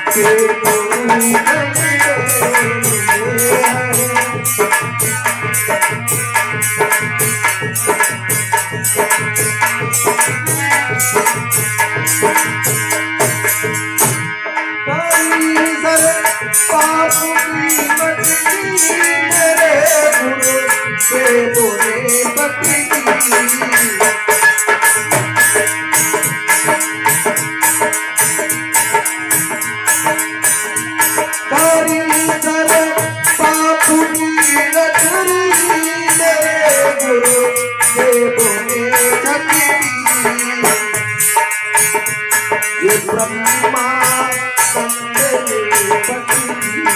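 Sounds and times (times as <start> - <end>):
fast jingling beat: 0.0 - 14.3, 14.9 - 46.9
dholak drumming: 0.0 - 46.9.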